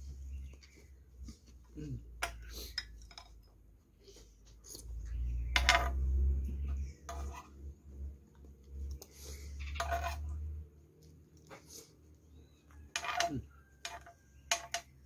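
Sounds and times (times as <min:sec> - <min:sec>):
cutlery clinking on a plate: 0:12.9 - 0:14.9.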